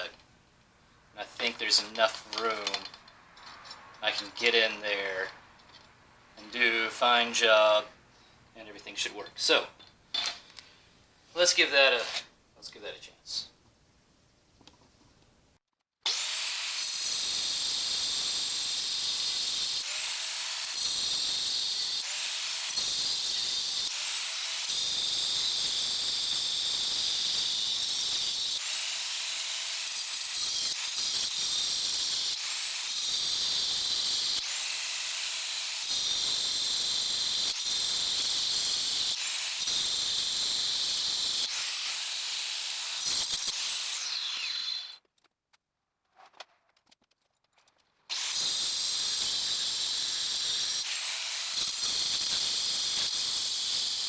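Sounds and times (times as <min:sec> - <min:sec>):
power saw whining and cutting metal: 0:16.1 - 0:45.0, 0:48.1 - 0:54.0.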